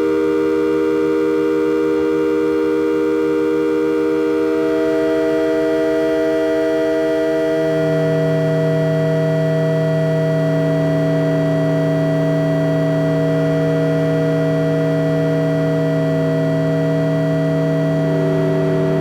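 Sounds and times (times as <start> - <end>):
synthesizer drone: 4.4 - 19.0.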